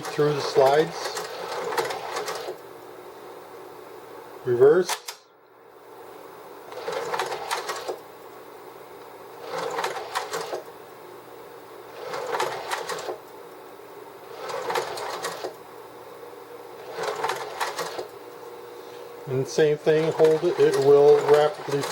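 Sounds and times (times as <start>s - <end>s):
slide projector mechanism clattering: 0.0s - 2.6s, 6.7s - 8.0s, 16.9s - 18.1s, 19.9s - 21.9s
projector hum: 0.0s - 21.9s.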